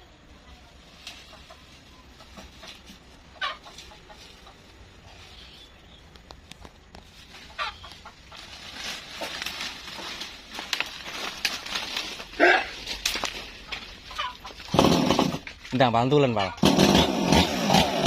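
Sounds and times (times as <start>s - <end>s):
animal calls: 12.2s - 13.0s.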